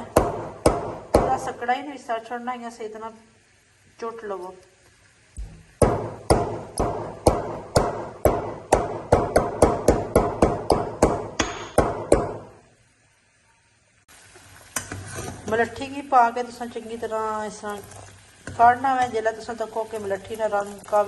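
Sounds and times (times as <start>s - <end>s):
pestle pounding in mortar: 0.0s - 1.5s, 5.8s - 12.5s.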